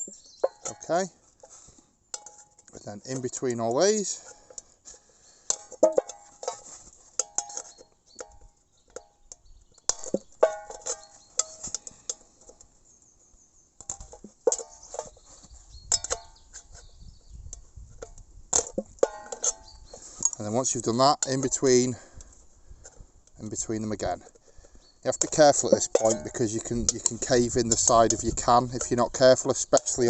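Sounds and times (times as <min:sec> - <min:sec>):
metallic clicks and scrapes: 0:00.0 - 0:12.8, 0:13.8 - 0:30.0.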